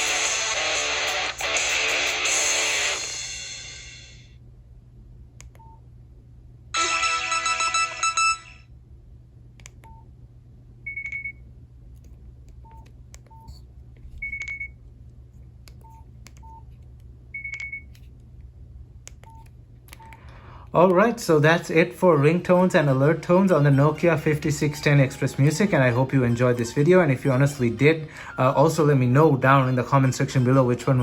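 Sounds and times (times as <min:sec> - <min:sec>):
stuttering phone alert chime: 0:06.8 - 0:08.6.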